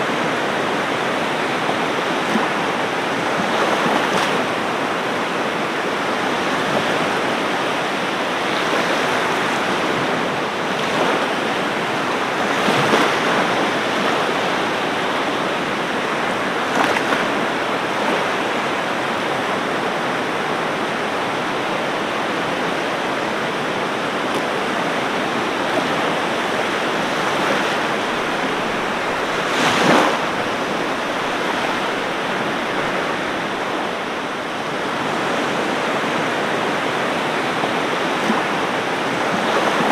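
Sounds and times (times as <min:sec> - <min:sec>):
ocean waves washing on beach: 0:00.0 - 0:39.9.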